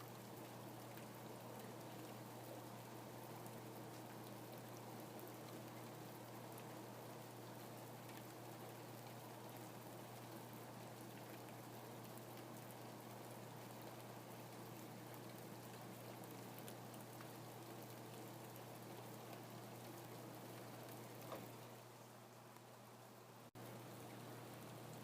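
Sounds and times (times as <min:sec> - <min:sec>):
low steady hum: 0:00.0 - 0:25.0
steady rain hiss: 0:00.0 - 0:25.0
rain drop ticks: 0:00.1 - 0:21.8, 0:23.6 - 0:25.0.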